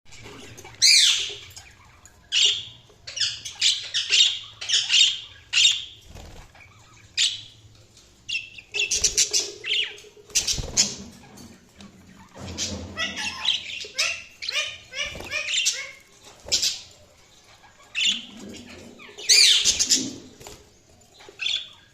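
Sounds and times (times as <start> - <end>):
budgies chirping and squawking: 0.1 - 21.9.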